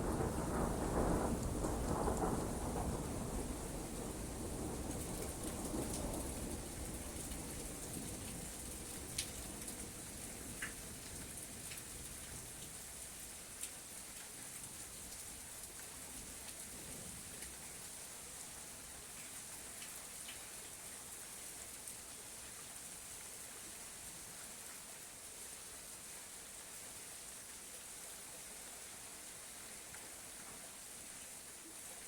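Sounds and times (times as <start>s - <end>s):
low thunder rumble: 0.0s - 6.8s
steady rain falling: 0.0s - 32.0s.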